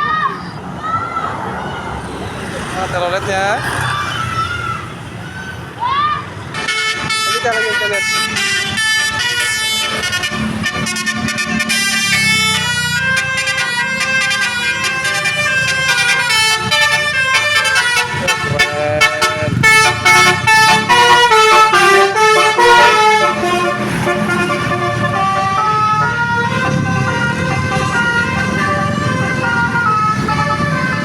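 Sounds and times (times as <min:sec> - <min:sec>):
bus engine running: 0:06.3 - 0:31.0
musical air horn tune: 0:06.6 - 0:31.0.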